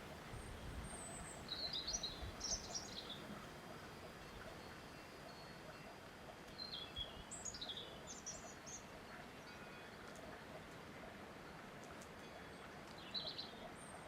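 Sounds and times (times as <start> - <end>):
faint outdoor hiss: 0.0 - 14.0
small bird chirping: 0.8 - 3.4.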